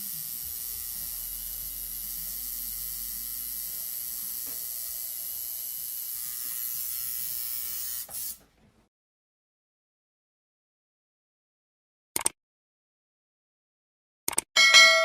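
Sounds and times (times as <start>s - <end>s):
tattoo machine buzzing: 0.0s - 8.4s.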